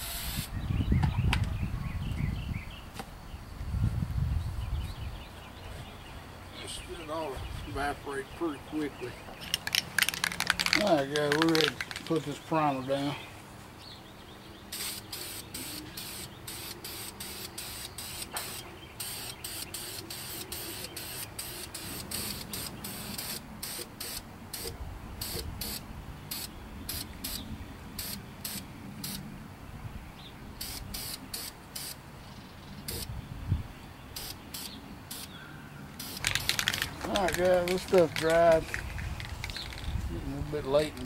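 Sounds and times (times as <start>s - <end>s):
spray can hissing bursts: 14.7s - 27.4s, 28.0s - 29.2s, 30.6s - 32.0s, 34.2s - 35.3s, 36.0s - 37.8s.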